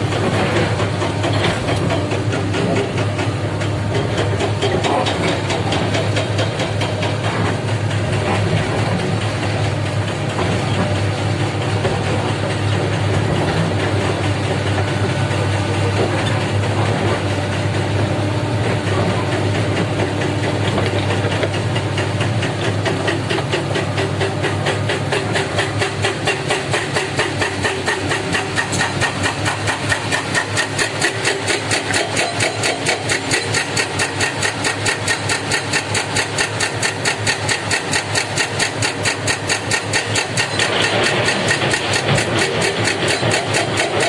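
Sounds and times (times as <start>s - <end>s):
heavy diesel engines droning: 0.0s - 44.0s.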